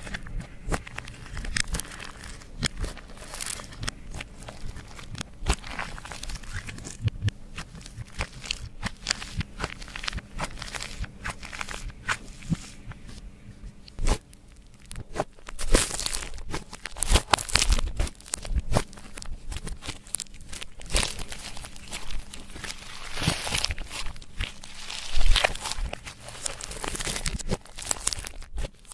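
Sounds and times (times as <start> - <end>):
slime squished by hand: 0.0 - 28.9.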